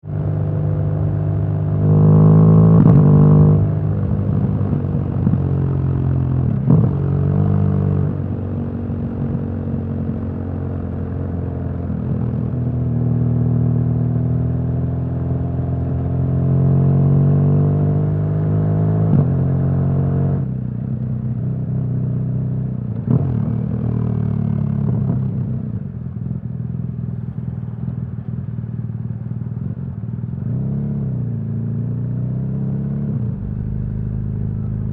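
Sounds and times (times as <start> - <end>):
motorcycle engine revving: 0.2 - 20.4, 30.4 - 34.9.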